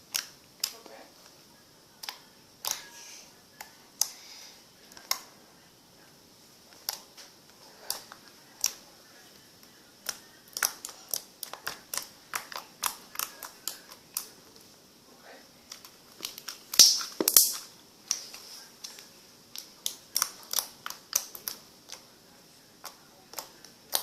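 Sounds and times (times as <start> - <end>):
slime squeezed with sticky pops: 15.8 - 18.3.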